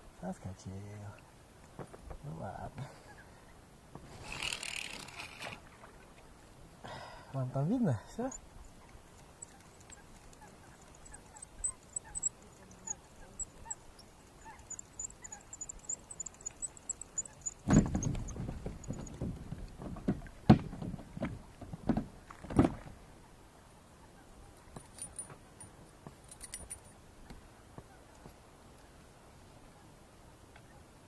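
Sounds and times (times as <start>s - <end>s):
faint high chirps: 8.2s - 19.2s
gear knocking in a boat: 9.2s - 22.9s.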